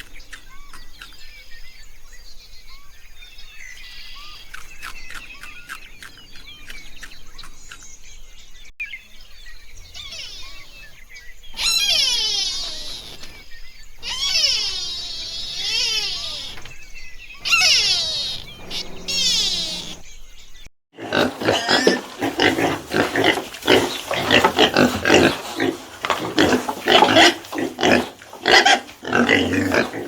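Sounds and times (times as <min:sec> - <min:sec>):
high sweeping animal calls: 0:09.6 - 0:30.0
animal grunts and squeals: 0:09.9 - 0:10.9, 0:11.6 - 0:13.4, 0:14.0 - 0:16.8, 0:17.4 - 0:20.0, 0:21.0 - 0:30.0.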